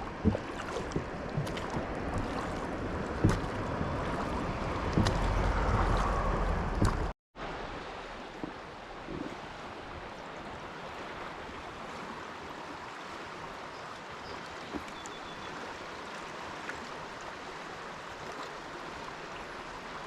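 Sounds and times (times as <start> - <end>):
knocks and bumps on boat: 0.0 - 7.1
wind noise: 0.0 - 7.1
rushing water: 0.0 - 20.0.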